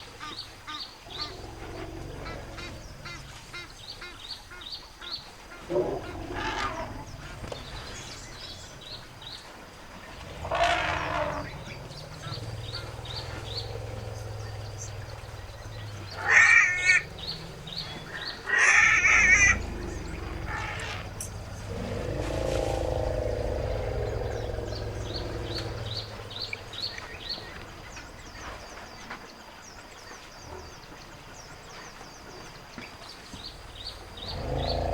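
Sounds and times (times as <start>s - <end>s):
low elephant rumbles: 5.7s - 29.1s, 33.0s - 34.9s.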